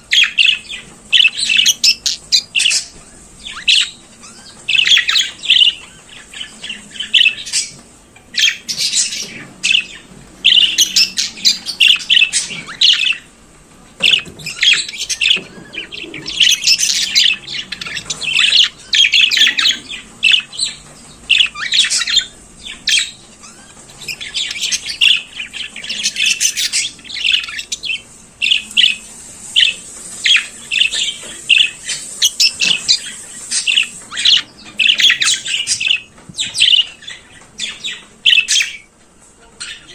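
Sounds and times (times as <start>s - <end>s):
budgerigar warbling: 14.0s - 29.0s, 30.3s - 38.8s.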